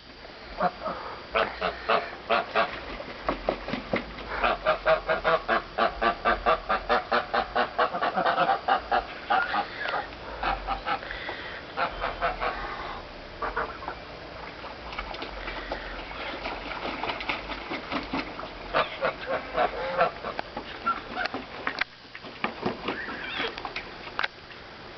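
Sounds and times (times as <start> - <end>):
geese honking: 0.6 - 2.8, 4.3 - 14.1, 18.6 - 21.4.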